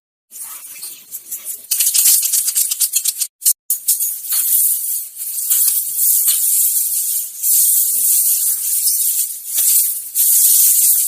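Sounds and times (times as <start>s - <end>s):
harsh high-pitched hiss: 3.4s - 11.0s.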